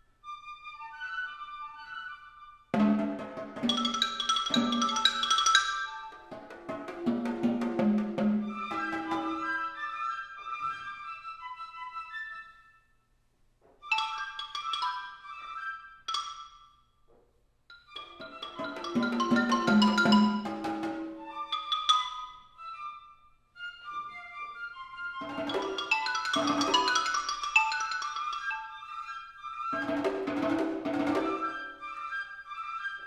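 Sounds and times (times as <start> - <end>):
marimba and glockenspiel flurries: 3.6 - 6.3, 13.9 - 16.9, 17.7 - 22.7, 25.2 - 29.9.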